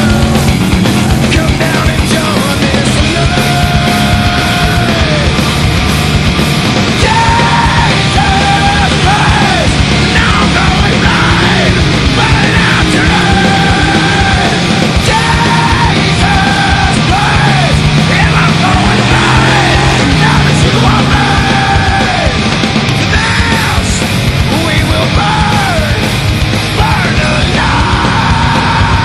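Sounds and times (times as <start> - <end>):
hard rock music: 0.0 - 29.0
yelled vocals: 0.0 - 29.0.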